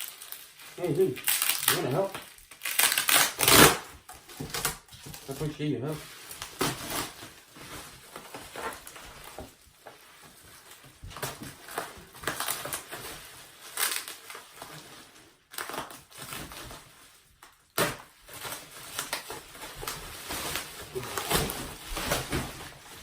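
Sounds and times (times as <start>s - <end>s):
packing wrap crinkling: 0.0s - 23.0s.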